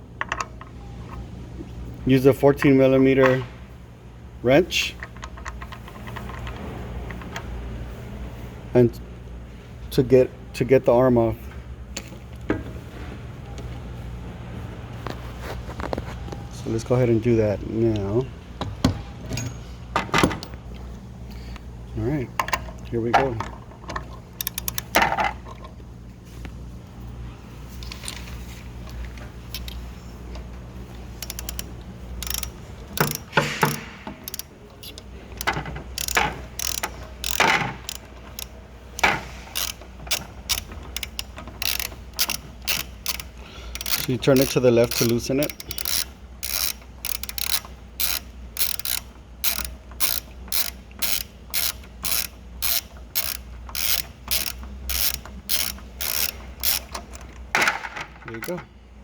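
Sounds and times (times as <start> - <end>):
loud metal clicks: 22.4 - 25.4, 29.5 - 58.7
ratchet wrench clicking: 24.3 - 25.1, 29.5 - 29.9, 31.0 - 57.4.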